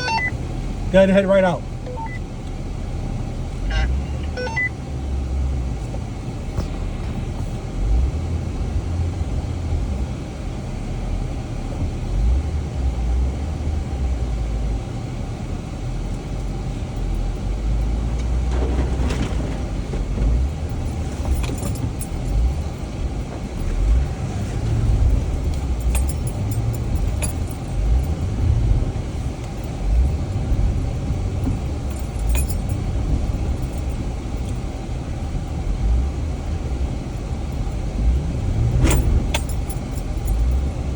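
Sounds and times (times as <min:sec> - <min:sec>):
vehicle engine rumble: 0:00.0 - 0:40.9
rattles and jangling clinks: 0:20.3 - 0:34.9, 0:37.1 - 0:40.9.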